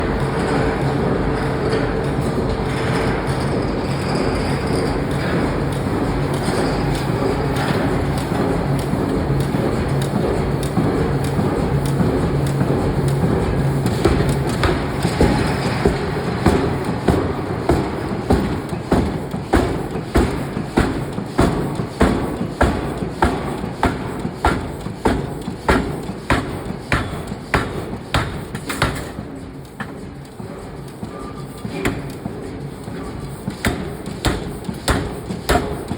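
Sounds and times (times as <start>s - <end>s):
shop machinery noise: 0.0s - 35.9s
hammer striking hot steel: 14.0s - 29.2s, 33.6s - 35.9s.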